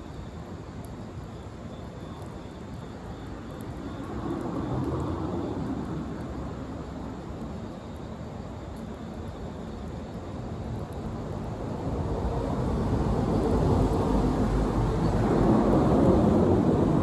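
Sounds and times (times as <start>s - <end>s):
steady outdoor rumble: 9.3s - 17.0s.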